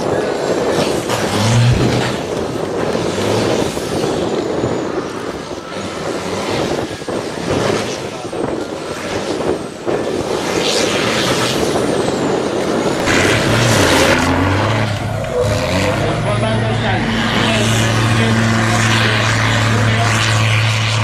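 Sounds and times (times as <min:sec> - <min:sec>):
faint high whistling glides: 0:00.0 - 0:21.0
truck engines revving: 0:00.0 - 0:21.0.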